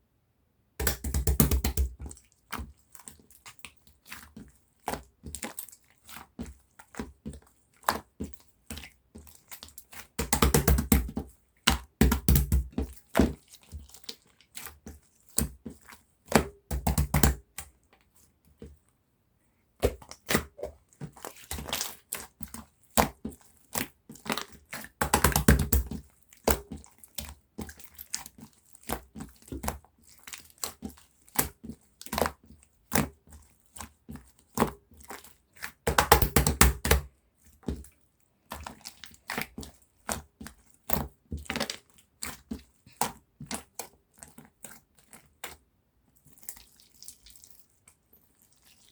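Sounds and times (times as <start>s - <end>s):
slime squished with popping air: 0.8s - 2.0s, 35.9s - 37.1s.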